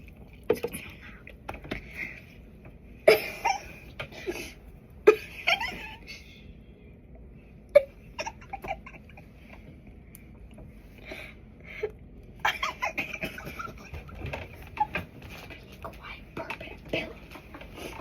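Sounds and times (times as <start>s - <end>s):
girls giggling: 3.0s - 6.3s, 7.7s - 9.5s, 12.4s - 15.0s.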